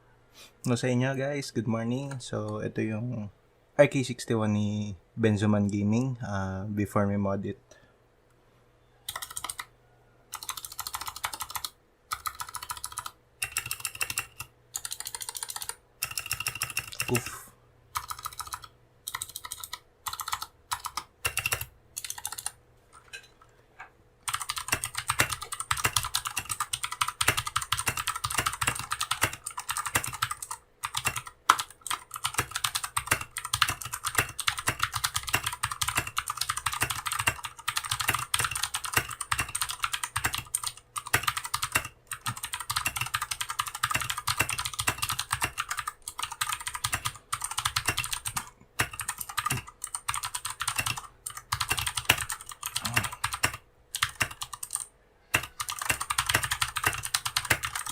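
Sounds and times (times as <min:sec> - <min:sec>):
clicky mechanical keyboard typing: 0:09.1 - 0:09.7, 0:10.3 - 0:17.3, 0:18.0 - 0:22.6, 0:24.2 - 0:57.9.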